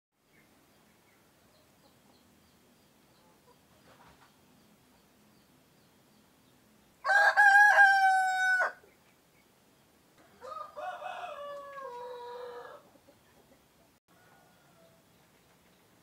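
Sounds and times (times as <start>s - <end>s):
rooster crowing: 7.0s - 8.8s, 10.3s - 12.9s, 14.1s - 15.0s.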